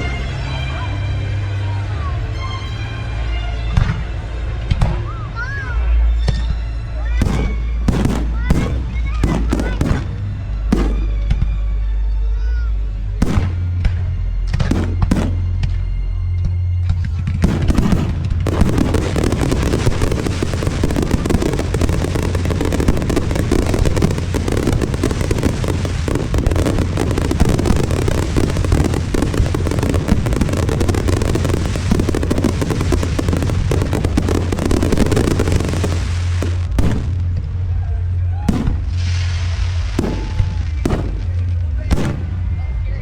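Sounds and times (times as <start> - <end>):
fireworks bangs and crackles: 6.2 - 11.6, 13.2 - 15.8, 16.4 - 43.0.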